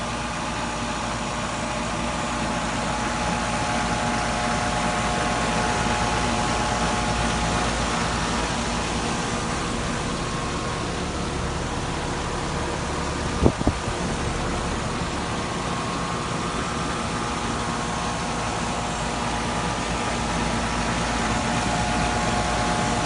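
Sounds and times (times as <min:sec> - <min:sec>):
air conditioning unit humming: 0:00.0 - 0:23.0
fan rushing: 0:00.0 - 0:23.0
deep rumble: 0:07.7 - 0:20.8.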